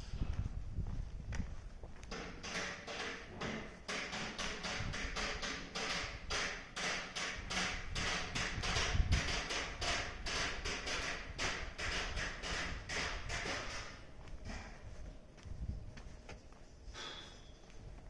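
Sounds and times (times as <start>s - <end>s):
footsteps walking: 0.0s - 2.2s, 13.6s - 18.0s.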